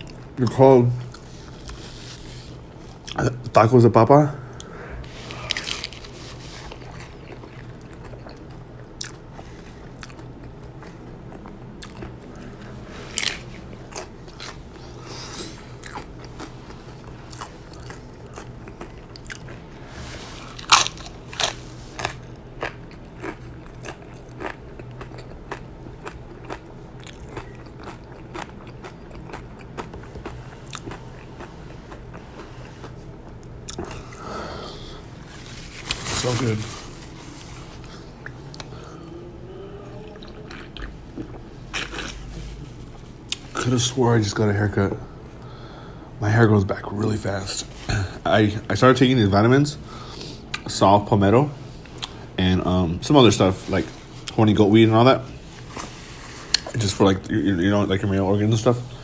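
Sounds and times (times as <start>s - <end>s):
crunchy food chewing: 4.6s - 38.9s, 40.1s - 43.7s.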